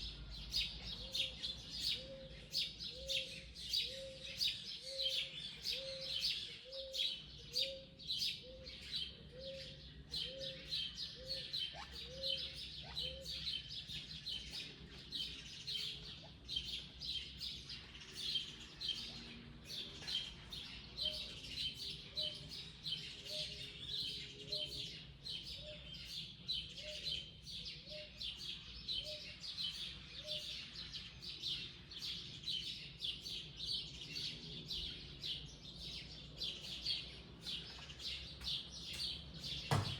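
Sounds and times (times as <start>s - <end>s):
birds chirping chorus: 0.0s - 39.9s.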